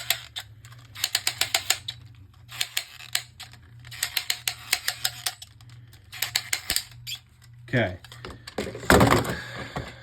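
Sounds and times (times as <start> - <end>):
plastic ratchet clicking rapidly: 0.0 - 7.2.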